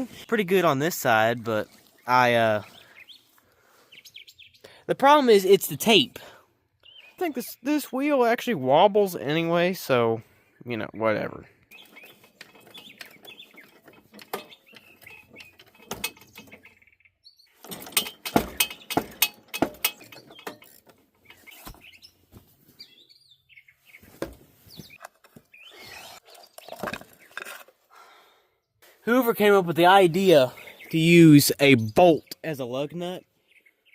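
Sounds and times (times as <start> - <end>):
birds chirping faintly: 0.0 - 33.9
metal parts clicking and knocking: 11.8 - 16.8, 17.6 - 21.6.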